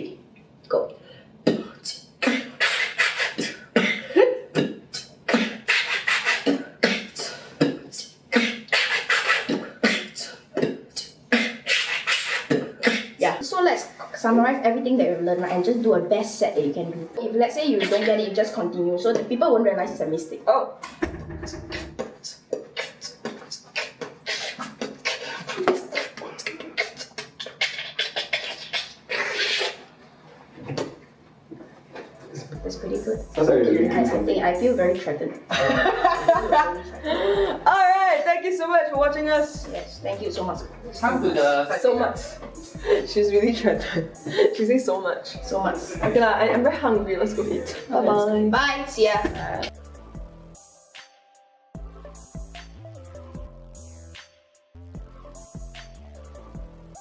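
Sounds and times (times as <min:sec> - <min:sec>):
person beatboxing: 0:01.4 - 0:13.4, 0:17.7 - 0:18.3, 0:20.8 - 0:29.9, 0:32.4 - 0:37.8, 0:39.0 - 0:48.4.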